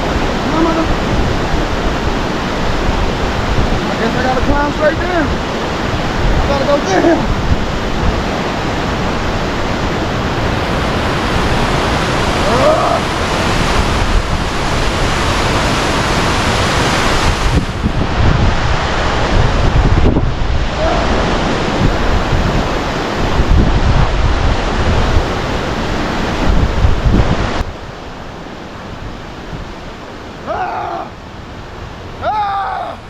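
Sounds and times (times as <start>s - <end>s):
wind buffeting microphone: 0.0s - 32.3s
person shouting: 6.6s - 7.3s, 12.4s - 13.1s, 20.8s - 21.2s, 30.4s - 31.2s, 32.2s - 33.0s
rushing hiss: 10.6s - 18.0s.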